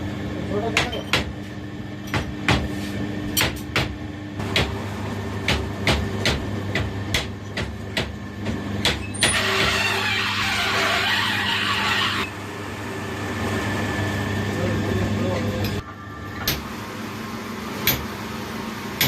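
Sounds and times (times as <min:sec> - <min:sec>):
steady machine hum: 0:00.0 - 0:19.0.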